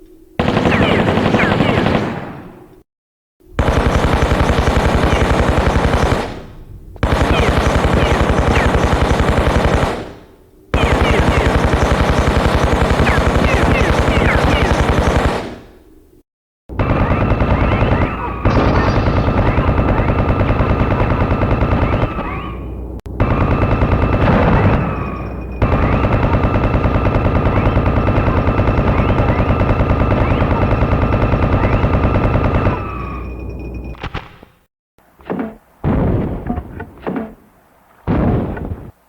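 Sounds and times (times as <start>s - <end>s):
rapid automatic gunfire: 0.4s - 2.5s, 3.6s - 15.6s, 16.7s - 22.5s, 23.2s - 33.0s.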